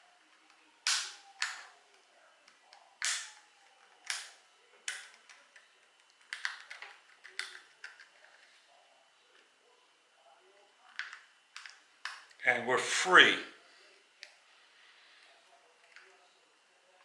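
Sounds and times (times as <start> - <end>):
plastic clips clicking: 0.8 - 1.7, 4.0 - 5.4, 6.0 - 8.1.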